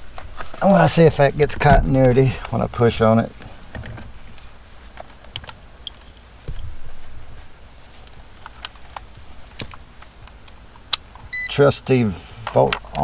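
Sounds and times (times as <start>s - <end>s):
dull low bump: 1.3s - 2.3s, 6.4s - 7.6s.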